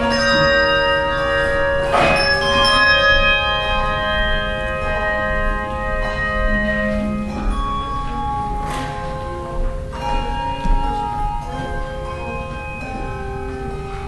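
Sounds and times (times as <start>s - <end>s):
bell choir ringing chords: 0.0s - 14.0s.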